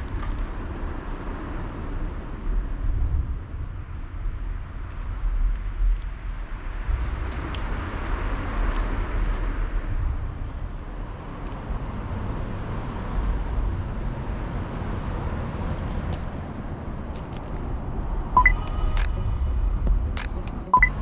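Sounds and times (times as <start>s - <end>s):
road traffic rumble: 0.0s - 21.0s
vehicle passing by: 6.7s - 20.8s.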